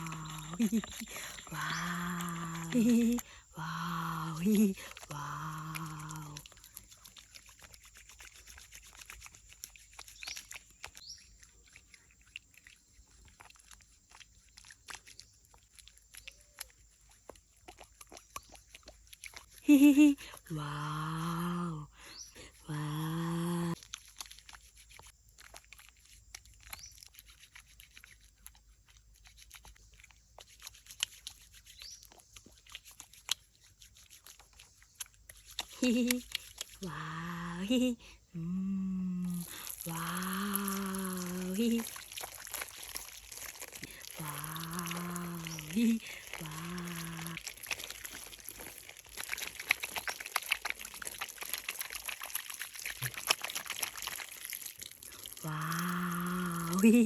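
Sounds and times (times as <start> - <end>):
small splashes: 39.2 - 57.0
water pouring and dripping: 39.2 - 57.0
crackling and clicking handling: 44.8 - 55.0.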